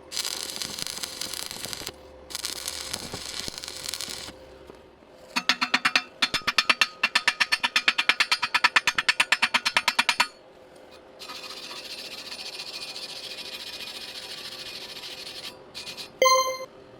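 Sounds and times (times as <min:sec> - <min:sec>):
welding arc crackling: 0:00.0 - 0:04.4
welding arc hissing: 0:00.0 - 0:04.4.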